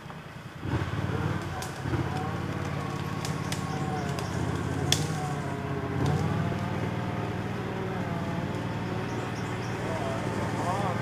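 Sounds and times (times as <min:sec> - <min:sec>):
vehicle engine running steadily: 0:00.0 - 0:11.0
sharp clicks: 0:01.5 - 0:05.4.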